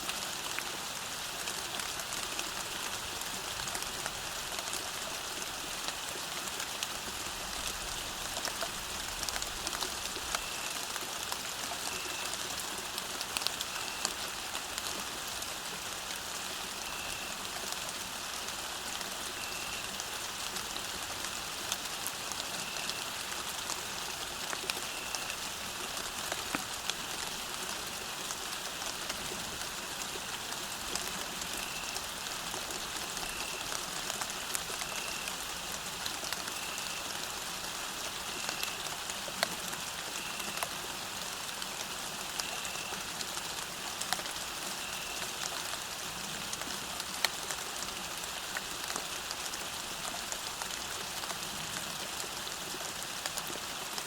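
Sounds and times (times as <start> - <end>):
rain falling: 0.0 - 54.0.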